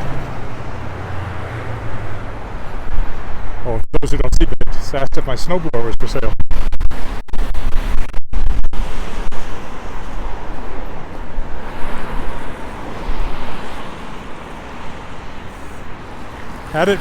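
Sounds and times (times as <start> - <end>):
car passing: 0.0 - 3.6, 8.8 - 17.0
wind buffeting microphone: 0.0 - 16.7.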